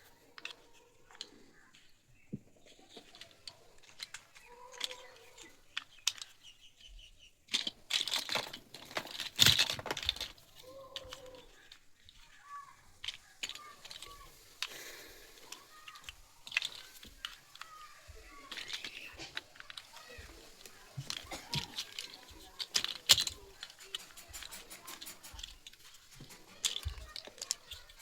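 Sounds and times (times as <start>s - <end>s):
plastic blocks clicking: 0.1s - 28.0s
packaging crinkling: 7.9s - 28.0s.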